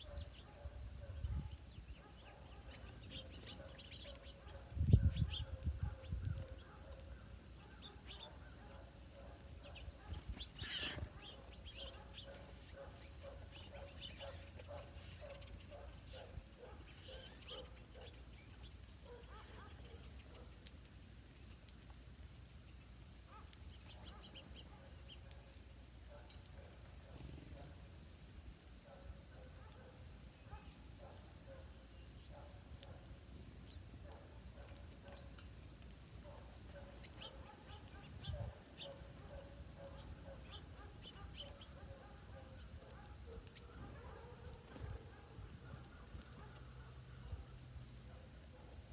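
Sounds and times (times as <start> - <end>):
small birds chirping: 0.0 - 48.9
short low bird calls: 10.4 - 15.5.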